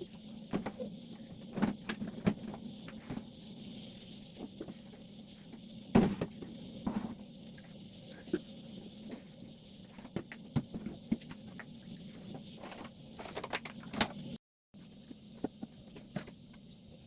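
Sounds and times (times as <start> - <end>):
objects clicking and knocking: 12.6 - 14.2.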